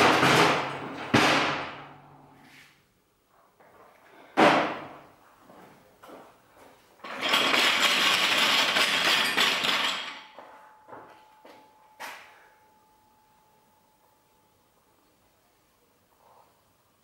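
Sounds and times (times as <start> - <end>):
loud sharp metal clank: 0.0 - 2.1.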